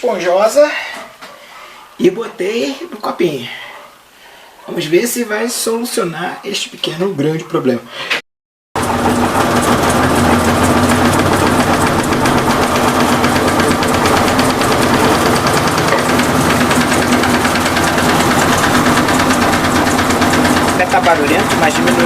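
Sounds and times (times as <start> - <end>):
fast rattling knock: 8.8 - 22.0
washing machine spinning: 8.8 - 22.0.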